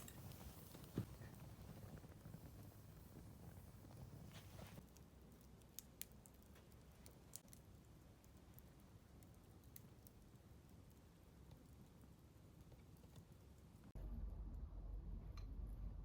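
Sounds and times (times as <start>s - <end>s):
campfire crackles: 0.0s - 14.0s.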